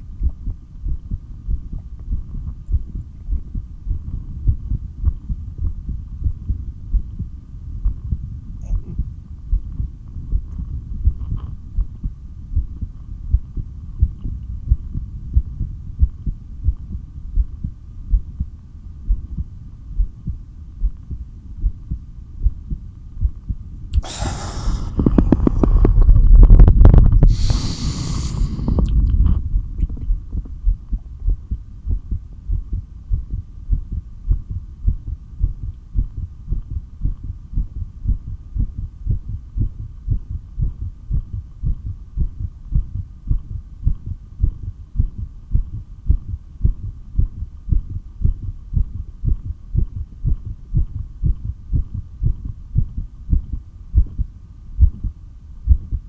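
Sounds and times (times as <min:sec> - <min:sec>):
heartbeat thumps: 0:00.0 - 0:56.0
rushes of breath: 0:24.0 - 0:26.4, 0:27.2 - 0:29.1.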